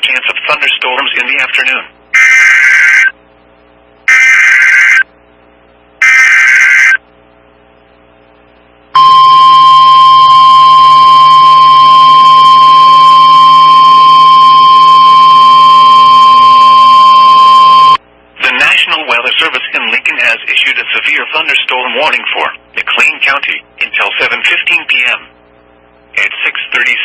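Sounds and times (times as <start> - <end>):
digital header data buzz: 2.1 - 3.2, 4.1 - 5.1, 6.0 - 7.0, 9.0 - 18.0
steady warning alarm tone: 2.2 - 3.1, 4.1 - 5.1, 6.0 - 7.0, 9.0 - 18.0.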